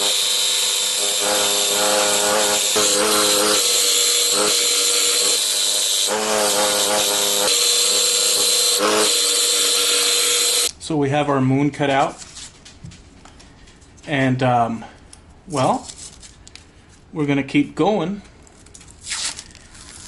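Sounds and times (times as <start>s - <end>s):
scroll saw cutting wood: 0.0s - 10.7s.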